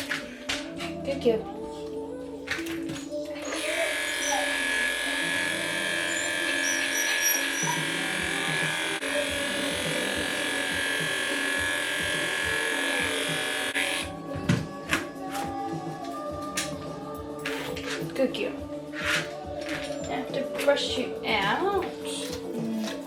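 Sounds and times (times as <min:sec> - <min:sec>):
background music: 0:00.0 - 0:23.0
electric lift motor whining: 0:03.4 - 0:14.2.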